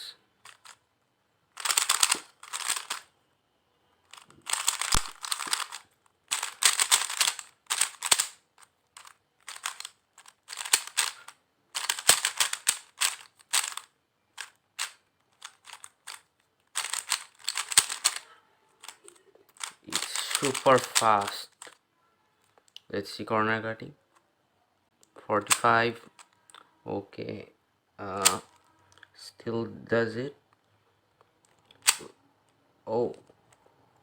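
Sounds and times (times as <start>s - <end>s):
speed cube clacking: 0.5s - 0.8s, 1.6s - 3.1s, 4.1s - 21.8s, 28.2s - 28.5s, 31.8s - 32.1s.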